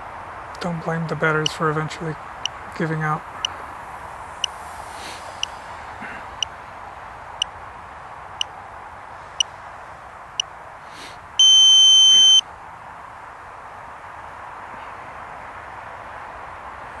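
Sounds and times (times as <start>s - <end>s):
long loud beep: 11.4s - 12.4s
short high beeps: 11.4s - 12.4s.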